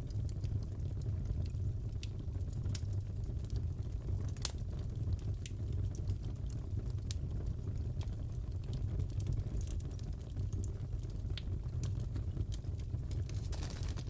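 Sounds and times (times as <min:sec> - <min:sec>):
fire crackling and popping: 0:00.0 - 0:14.0
low rumble of burning logs: 0:00.0 - 0:14.0.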